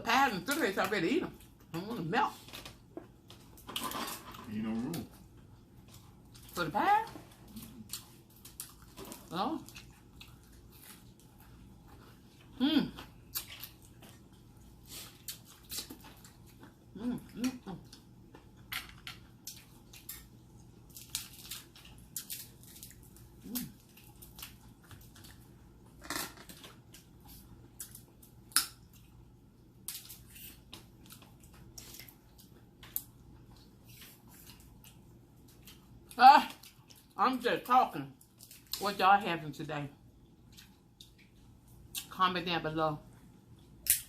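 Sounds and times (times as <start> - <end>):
eating clicks and cracks: 27.8 - 29.1.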